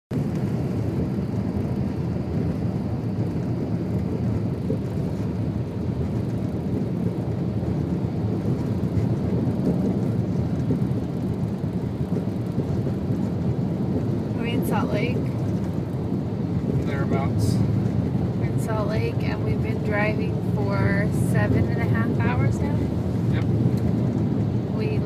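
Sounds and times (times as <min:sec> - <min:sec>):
car engine cruising: 0:00.1 - 0:25.0
tyres on highway: 0:00.1 - 0:25.0.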